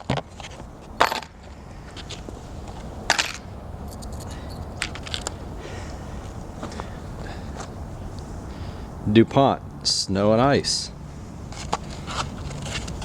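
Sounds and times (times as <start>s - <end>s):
metallic clinks of padlocks: 3.9s - 4.6s.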